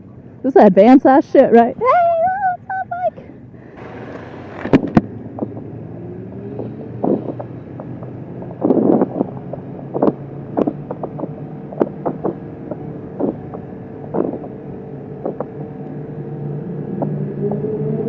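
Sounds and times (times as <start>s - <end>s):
motorcycle engine cruising: 3.7s - 18.0s
wind noise on microphone: 4.5s - 15.6s.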